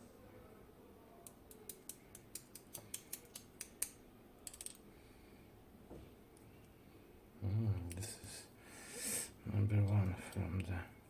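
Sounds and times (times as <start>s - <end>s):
light clicks of small lock parts: 1.2s - 4.8s.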